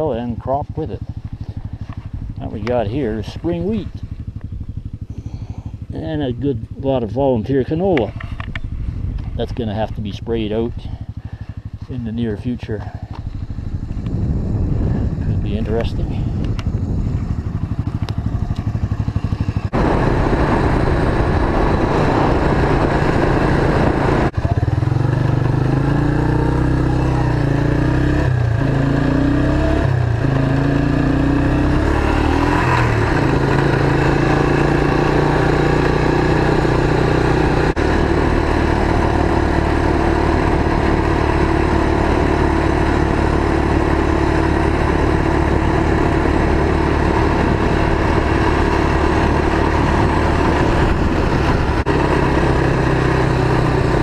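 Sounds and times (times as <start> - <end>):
motorcycle trike engine running: 0.0 - 54.0
steady rush of noise: 19.0 - 24.4.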